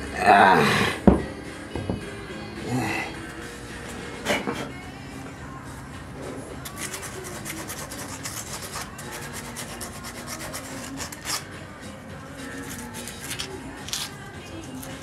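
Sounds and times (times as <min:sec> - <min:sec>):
hand scraping and rubbing metal: 0:03.2 - 0:04.9, 0:05.7 - 0:15.0.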